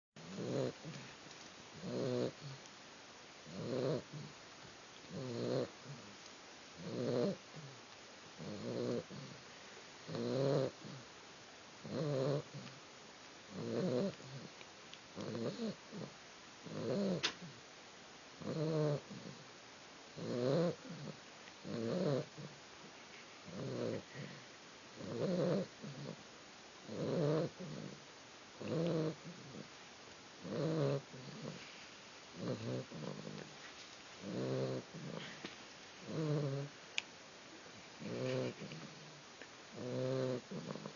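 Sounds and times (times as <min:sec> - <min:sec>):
puppy snoring: 0:00.2 - 0:02.7, 0:03.4 - 0:04.4, 0:05.0 - 0:06.2, 0:06.8 - 0:11.1, 0:11.8 - 0:12.8, 0:13.5 - 0:17.6, 0:18.4 - 0:19.5, 0:20.1 - 0:22.6, 0:23.4 - 0:29.8, 0:30.4 - 0:36.8, 0:38.0 - 0:40.9
soft breath: 0:22.9 - 0:24.7, 0:31.2 - 0:34.2, 0:35.0 - 0:35.7.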